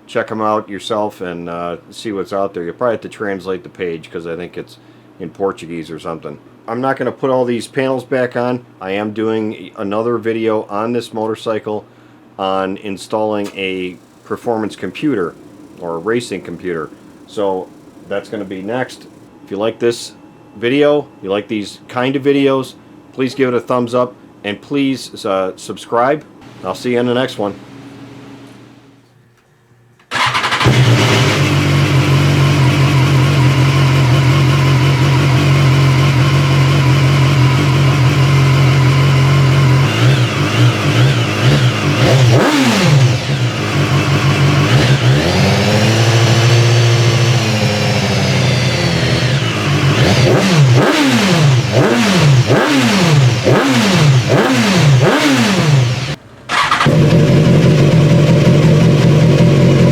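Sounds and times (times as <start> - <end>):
motorcycle engine revving: 30.1 - 59.9.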